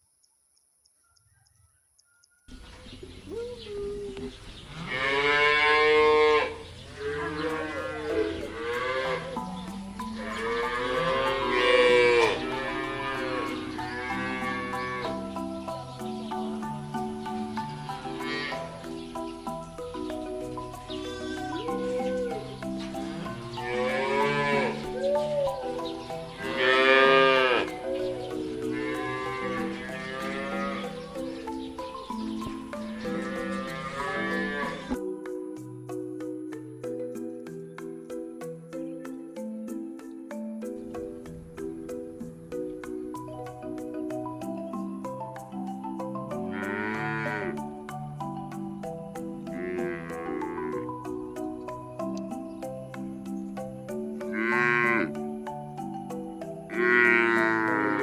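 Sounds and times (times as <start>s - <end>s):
cattle mooing: 4.7s - 9.4s, 10.2s - 15.2s, 23.0s - 25.2s, 26.4s - 27.7s, 28.6s - 31.0s, 33.0s - 35.0s, 46.5s - 47.6s, 49.5s - 50.9s, 54.3s - 55.1s, 56.7s - 58.0s
background music: 4.7s - 58.0s.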